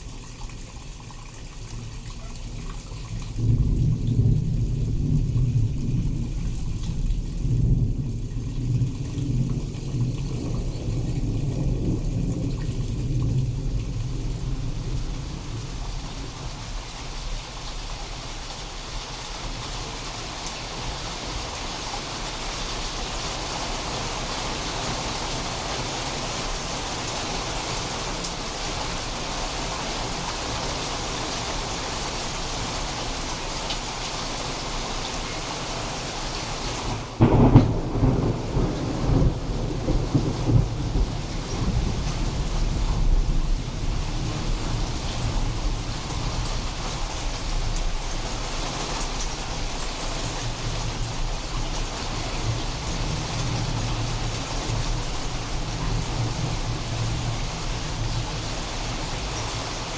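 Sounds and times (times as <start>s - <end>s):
heavy rain falling: 0.0s - 59.9s
low thunder rumble: 1.8s - 18.3s, 36.7s - 59.9s.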